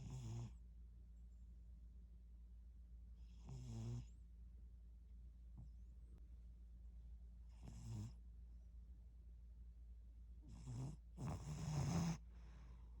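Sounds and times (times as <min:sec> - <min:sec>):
cat snoring: 0:00.0 - 0:00.6, 0:03.2 - 0:04.2, 0:07.5 - 0:08.2, 0:10.4 - 0:12.2.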